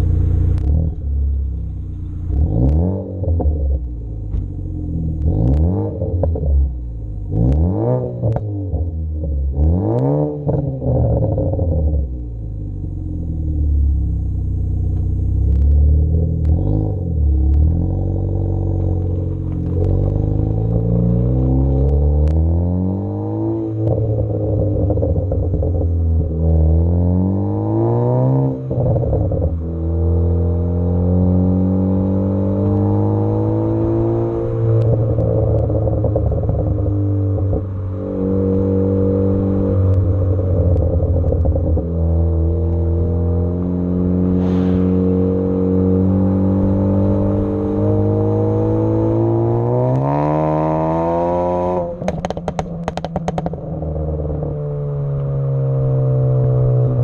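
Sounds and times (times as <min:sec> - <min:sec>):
car engine accelerating: 0:00.0 - 0:57.0
exhaust pops and crackles: 0:18.7 - 0:20.8, 0:34.7 - 0:37.7, 0:39.8 - 0:42.0, 0:51.8 - 0:55.4.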